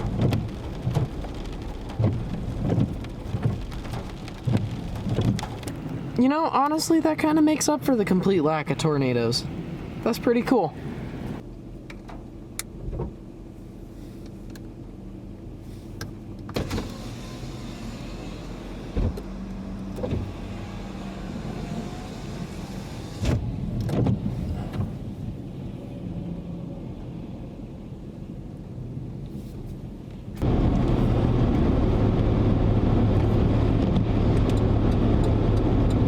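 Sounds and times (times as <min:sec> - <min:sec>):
knocks and thumps: 0:00.0 - 0:05.7
car engine idling: 0:30.4 - 0:36.0.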